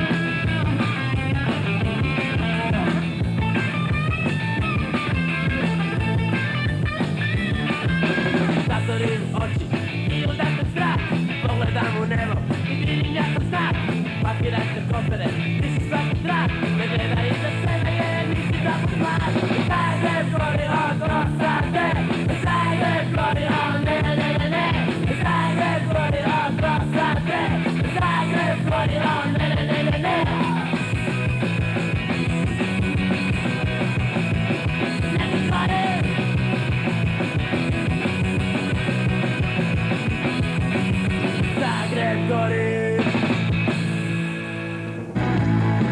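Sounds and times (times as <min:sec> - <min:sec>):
punk rock band playing: 0:00.0 - 0:45.9
person singing: 0:08.6 - 0:30.9, 0:35.0 - 0:36.3, 0:41.5 - 0:43.1.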